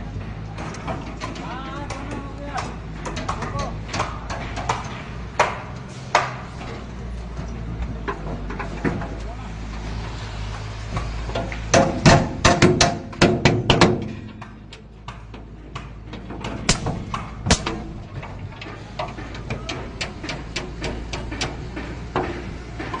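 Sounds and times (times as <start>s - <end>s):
steady low hum: 0.0s - 23.0s
hammer striking timber: 0.8s - 6.5s, 11.0s - 23.0s.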